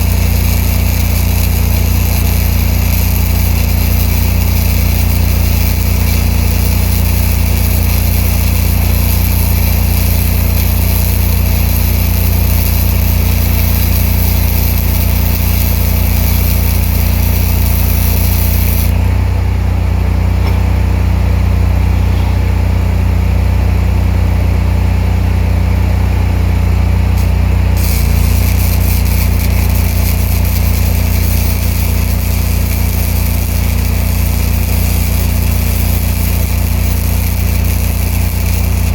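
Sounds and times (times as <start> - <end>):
welding arc hissing and crackling: 0.0 - 19.2, 27.1 - 38.9
engine running: 0.0 - 38.9.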